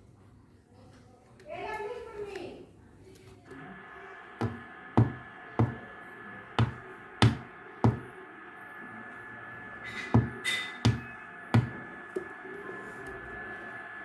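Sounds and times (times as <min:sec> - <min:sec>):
sharp drum hits: 0:09.9 - 0:11.8.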